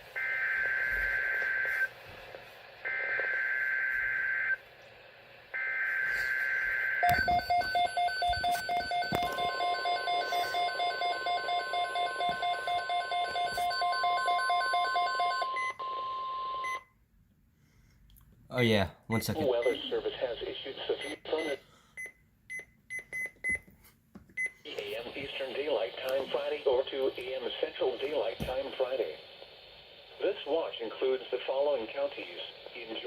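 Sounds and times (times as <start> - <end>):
steady warning alarm tone: 0.2 - 2.0, 5.6 - 16.8.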